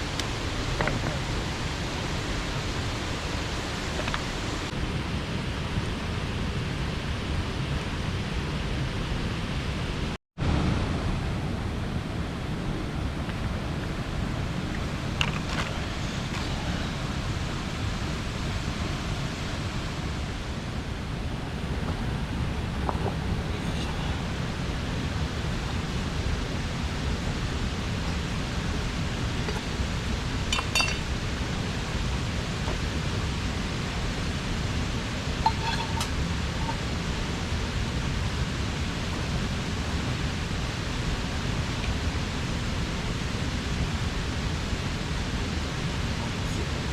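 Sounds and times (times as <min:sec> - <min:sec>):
stream water flowing: 0:00.0 - 0:04.7, 0:13.2 - 0:20.9, 0:23.6 - 0:46.9
light clinks: 0:30.5 - 0:31.1, 0:35.4 - 0:36.8.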